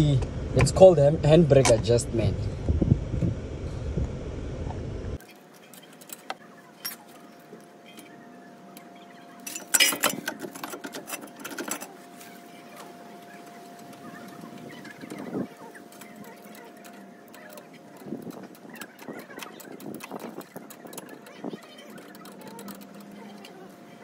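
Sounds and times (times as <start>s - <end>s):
thin steady whine: 0.0s - 24.0s
metal tools and brake parts clinking: 5.6s - 7.2s, 9.4s - 12.0s.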